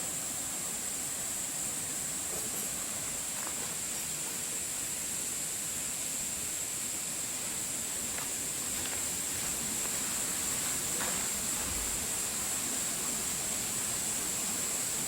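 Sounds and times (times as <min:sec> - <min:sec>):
high-pitched hiss: 0:00.0 - 0:15.0
stream rushing: 0:00.0 - 0:15.0.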